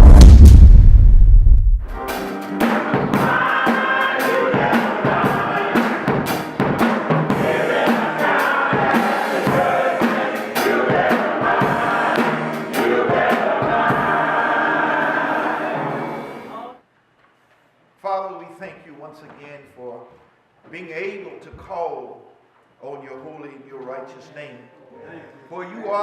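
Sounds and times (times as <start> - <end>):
drums with steady beat: 0.0 - 14.2
people singing: 2.5 - 16.8.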